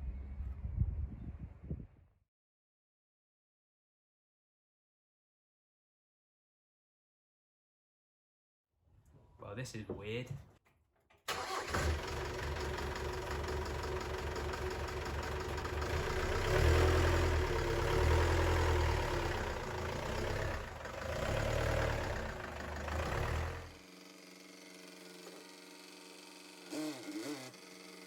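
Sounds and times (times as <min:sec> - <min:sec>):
vehicle engine running: 0:11.6 - 0:25.9.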